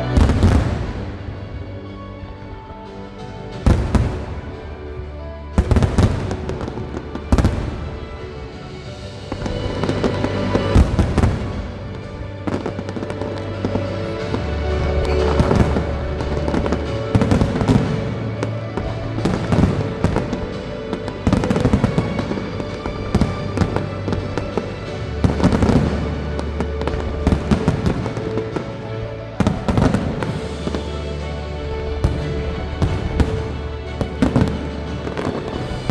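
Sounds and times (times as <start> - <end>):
fireworks bangs and crackles: 0.0 - 35.9
loud music with deep bass: 0.0 - 35.9.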